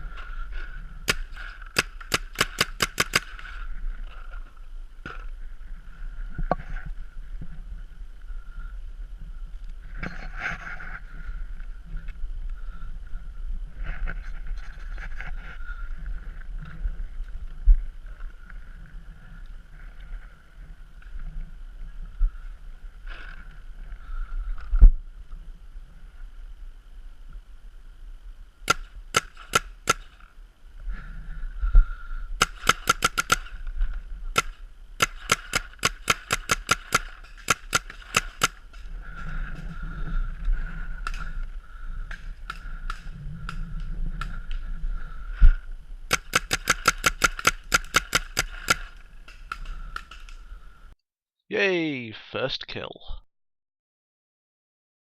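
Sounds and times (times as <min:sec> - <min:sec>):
paintball markers firing: 0:01.1 - 0:03.5, 0:28.7 - 0:30.2, 0:32.4 - 0:33.6, 0:34.4 - 0:38.6, 0:46.1 - 0:48.9.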